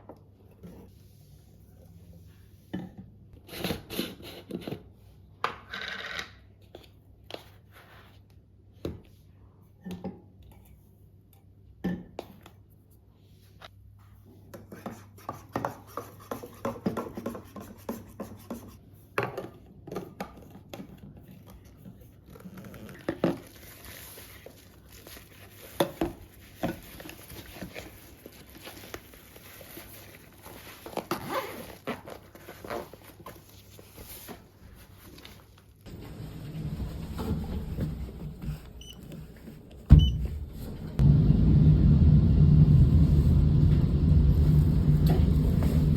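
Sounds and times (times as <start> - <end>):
rustling and scraping: 21.0 - 41.0.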